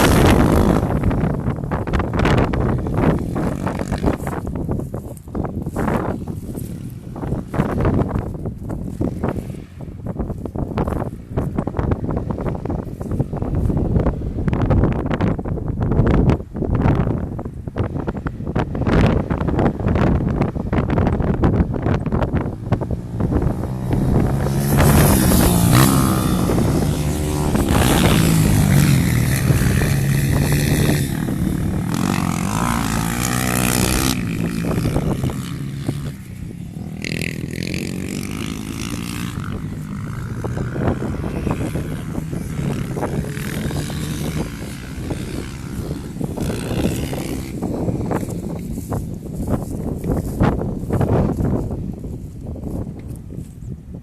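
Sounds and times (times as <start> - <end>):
motorcycle engine revving: 0.0 - 10.0, 20.8 - 51.6
wind hiss: 0.0 - 53.5.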